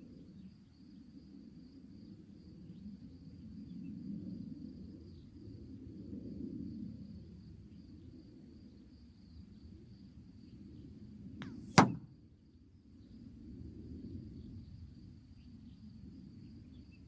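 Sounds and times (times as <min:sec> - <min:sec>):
air gun shot: 0:11.4 - 0:12.1.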